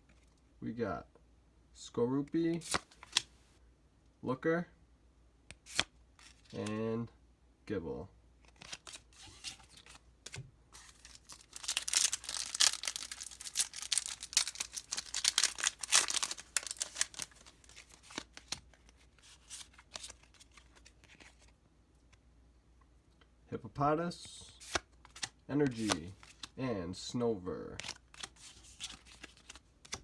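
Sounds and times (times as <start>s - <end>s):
cards clicking and rustling: 2.5s - 3.4s, 5.5s - 6.8s, 8.4s - 22.2s, 24.6s - 26.6s, 27.7s - 30.0s
foil pack tearing and crinkling: 10.8s - 18.4s.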